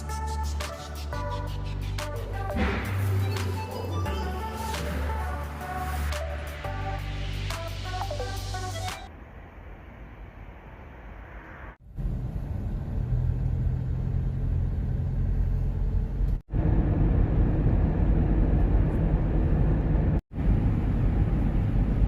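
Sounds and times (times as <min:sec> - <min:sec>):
road rumble: 0:08.8 - 0:22.0
vehicle engine drone: 0:08.8 - 0:22.0.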